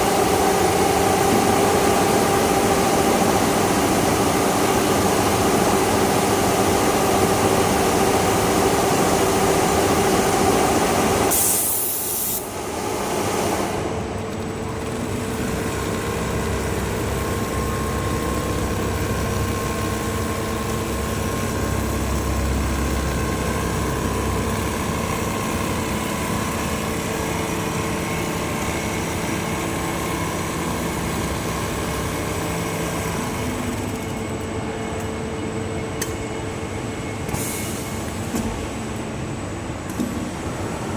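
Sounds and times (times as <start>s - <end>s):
sewing machinery humming: 0.0s - 11.3s, 12.4s - 34.2s
burst of hiss: 11.3s - 12.5s.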